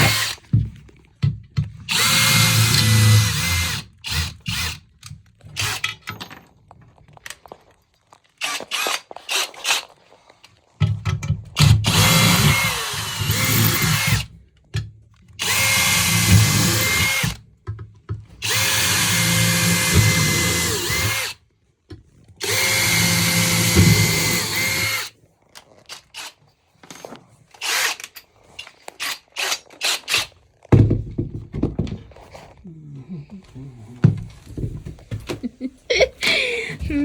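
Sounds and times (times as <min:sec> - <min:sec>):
power tool motor whining: 0:00.0 - 0:00.5, 0:01.9 - 0:04.8, 0:11.7 - 0:14.3, 0:15.4 - 0:17.4, 0:18.4 - 0:21.4, 0:22.4 - 0:25.1, 0:27.6 - 0:28.2
scattered clicks and knocks: 0:10.8 - 0:12.6, 0:26.8 - 0:32.3.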